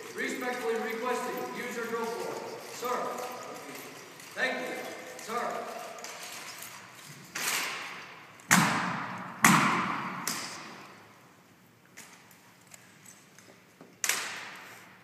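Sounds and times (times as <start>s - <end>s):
rifles slapped and struck: 5.2s - 10.9s, 13.9s - 14.7s.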